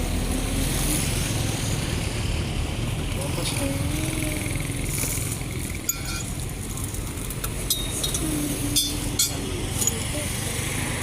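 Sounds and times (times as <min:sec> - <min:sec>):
vehicle engines rumbling: 0:00.0 - 0:11.0
tools clinking against metal: 0:05.8 - 0:06.4, 0:07.6 - 0:10.1.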